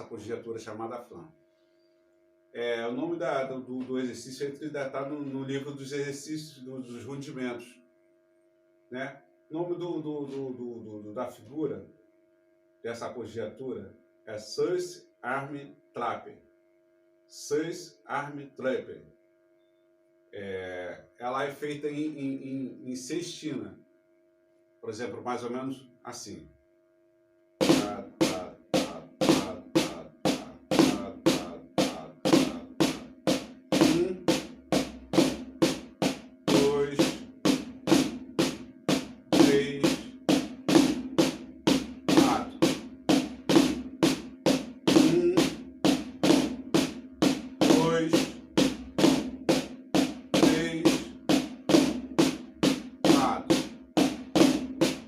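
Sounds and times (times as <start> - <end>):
snare drum flams: 27.6 - 55.0.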